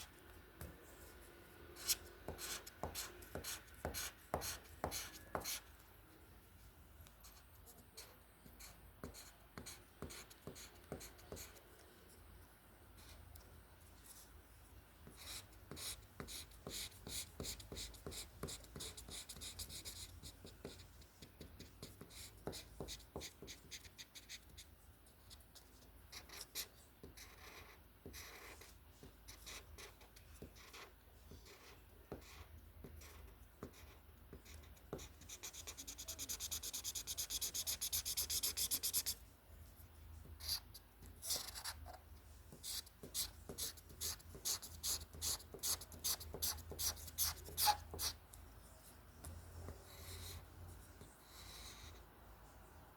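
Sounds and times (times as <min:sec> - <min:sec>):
rapid scribbling: 0:40.4 - 0:48.2
drawing tool scratching paper: 0:42.6 - 0:48.2.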